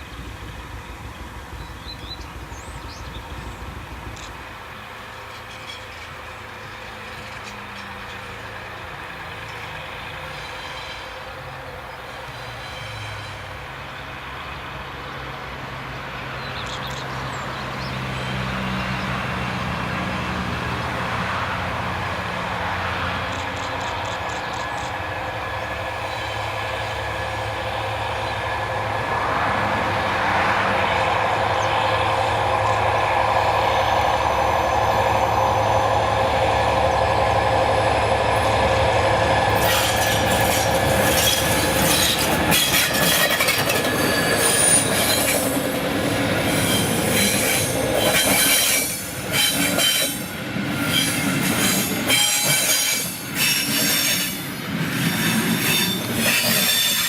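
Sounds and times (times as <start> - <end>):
train rolling: 0.0 - 57.0
train brakes squealing: 5.1 - 8.5, 9.4 - 14.0, 30.3 - 37.8, 38.4 - 57.0.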